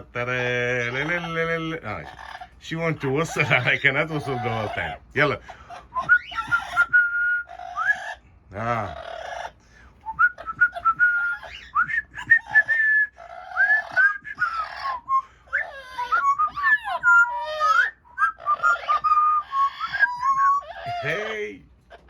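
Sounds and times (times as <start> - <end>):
parrot raspy chatter: 0.0 - 22.0
parrot whistling: 3.2 - 8.2, 8.9 - 21.5.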